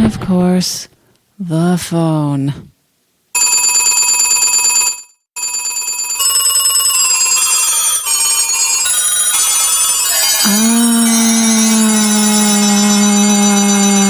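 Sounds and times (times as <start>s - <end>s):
telephone ringing bell: 3.4s - 14.0s.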